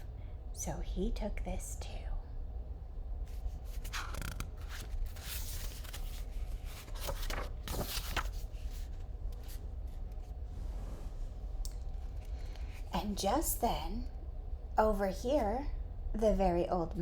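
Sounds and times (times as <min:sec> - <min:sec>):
book pages rustling and turning: 0:03.3 - 0:11.2.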